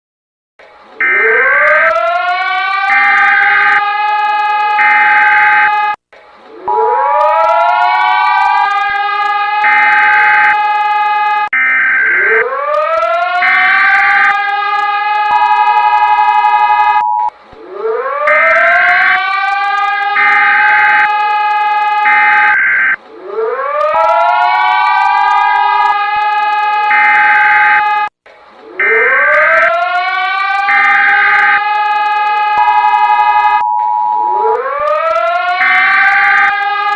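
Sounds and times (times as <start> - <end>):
siren winding up: 1.0 - 6.0, 6.6 - 28.1, 28.8 - 36.9
buzzing data bursts: 22.0 - 23.0.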